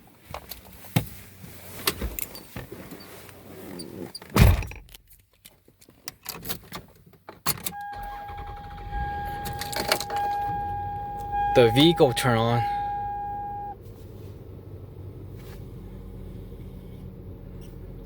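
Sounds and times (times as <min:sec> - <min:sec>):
van engine running with high whine: 0:07.8 - 0:18.0.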